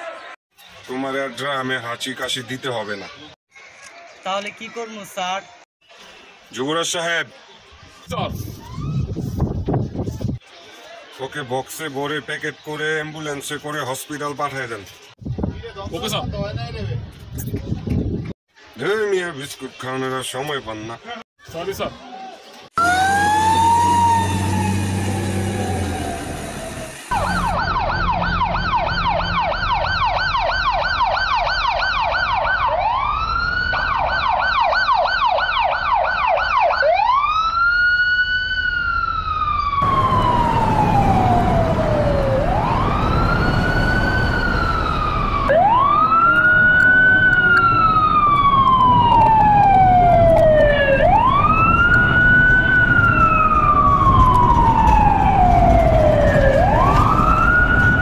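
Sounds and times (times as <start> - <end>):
emergency vehicle siren: 8.3 - 9.6, 22.8 - 58.0.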